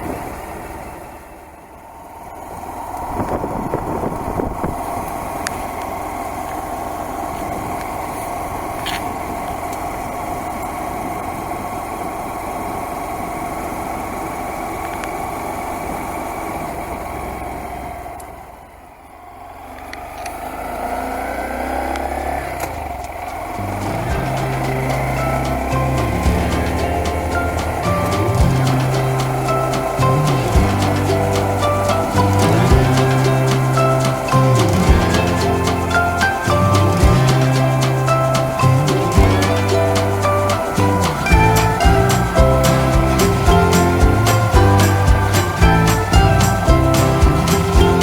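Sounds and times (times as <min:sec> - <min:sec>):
motorbike engine running: 0:22.0 - 0:48.0.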